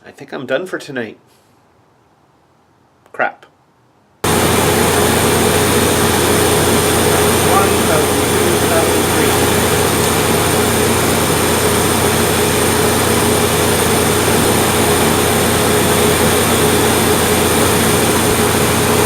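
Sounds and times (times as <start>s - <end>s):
car engine running steadily: 4.2s - 19.0s.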